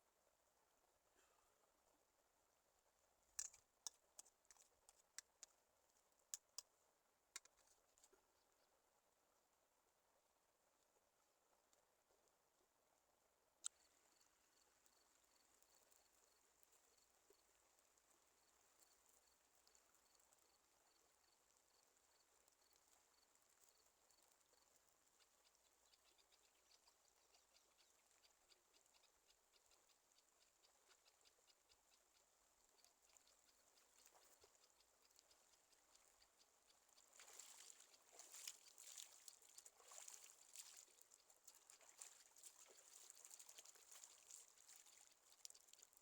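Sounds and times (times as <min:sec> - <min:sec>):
faint sharp clicks: 0:06.3 - 0:06.7, 0:07.3 - 0:08.2, 0:13.6 - 0:13.8.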